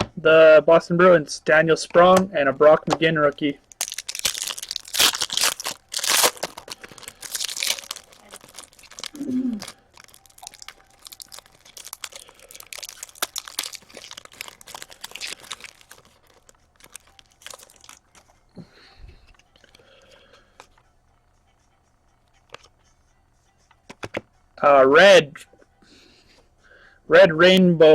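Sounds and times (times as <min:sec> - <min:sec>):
wrapper crinkling and tearing: 0:03.7 - 0:18.2
cards rustling: 0:03.7 - 0:18.4.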